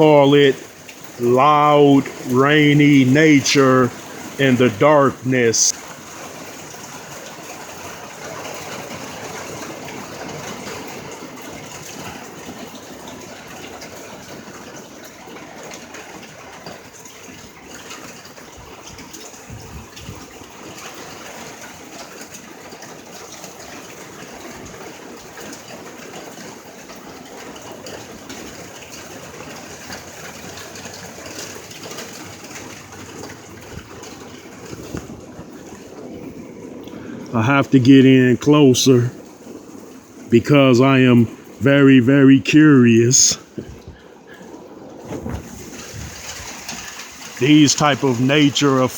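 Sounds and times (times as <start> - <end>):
heavy rain on pavement: 0.0 - 48.9.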